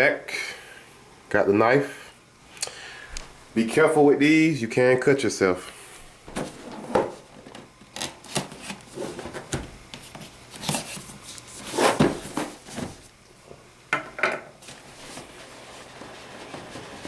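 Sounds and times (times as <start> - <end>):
knife cutting cardboard box: 10.6 - 12.6.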